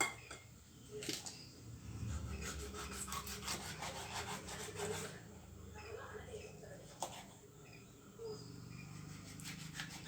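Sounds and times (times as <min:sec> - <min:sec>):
knife sawing through fish: 0:02.1 - 0:05.2, 0:09.0 - 0:10.0.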